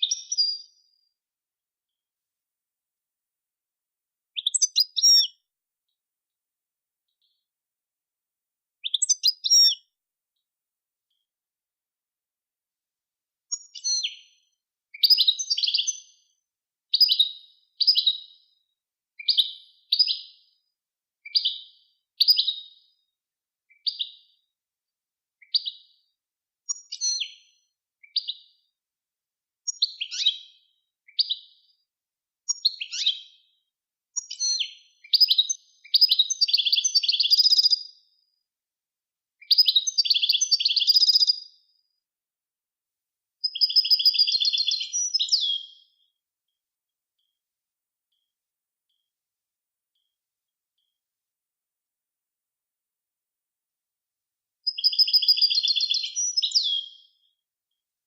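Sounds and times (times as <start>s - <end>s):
songbird chirping and trilling: 0.0s - 1.2s, 4.3s - 5.5s, 8.8s - 10.0s, 13.5s - 18.6s, 19.2s - 20.6s, 21.3s - 23.1s, 23.7s - 24.5s, 25.4s - 26.1s, 26.7s - 28.7s, 29.7s - 31.7s, 32.5s - 33.6s, 34.2s - 38.3s, 39.4s - 41.8s, 43.5s - 46.2s, 54.7s - 57.4s.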